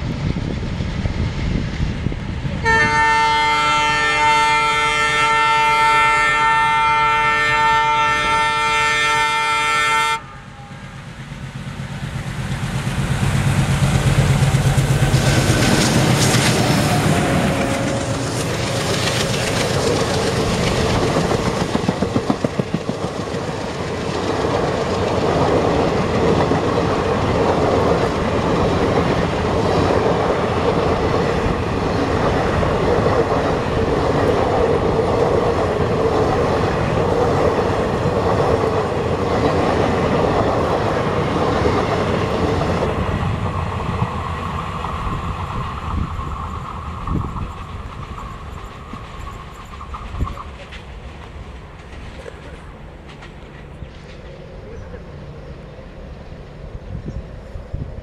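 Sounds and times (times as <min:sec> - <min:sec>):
train rumble and hum: 0:00.0 - 0:58.0
train wheels clattering over joints: 0:11.7 - 0:45.0, 0:45.6 - 0:54.7.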